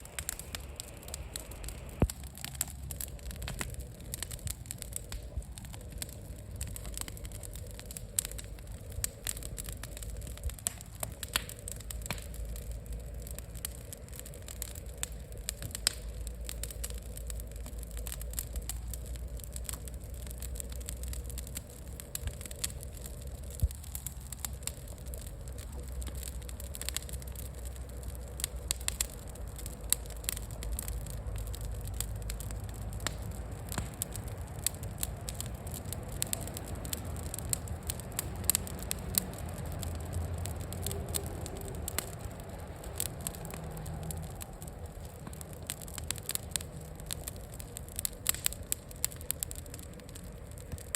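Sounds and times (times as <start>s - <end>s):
low steady rumble: 0.0s - 50.9s
wood bonfire crackling: 0.0s - 50.9s.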